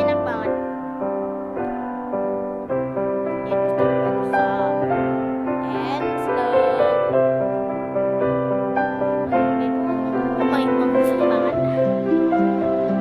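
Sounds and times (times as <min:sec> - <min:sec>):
gentle keyboard melody with chords: 0:00.0 - 0:13.0.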